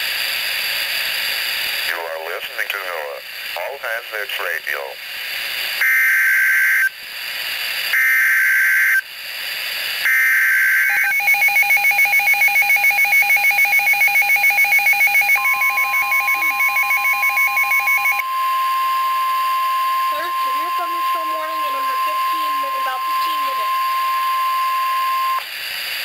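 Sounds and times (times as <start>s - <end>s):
rapid electronic alert beeping: 10.1s - 18.8s, 19.8s - 25.4s
steady warning tone: 10.1s - 25.5s
buzzy digital data bursts: 15.3s - 25.4s.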